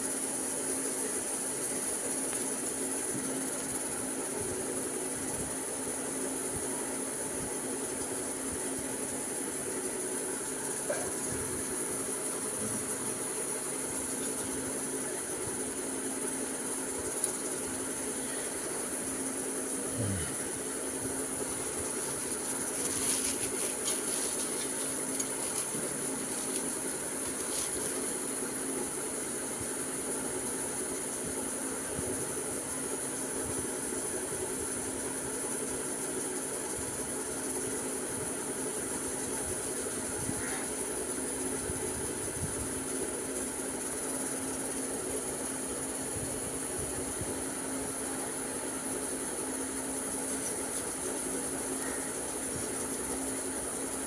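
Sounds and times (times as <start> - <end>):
faint crackles: 21.5 - 28.3.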